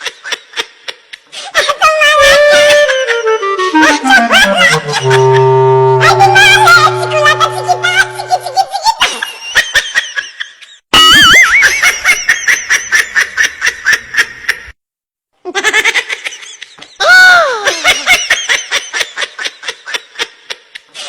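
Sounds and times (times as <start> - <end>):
laughter: 0.0 - 2.7, 9.1 - 14.7, 15.4 - 21.0
falling whistle-like tone: 2.6 - 8.8
wobbling whistle-like tones: 2.7 - 8.8.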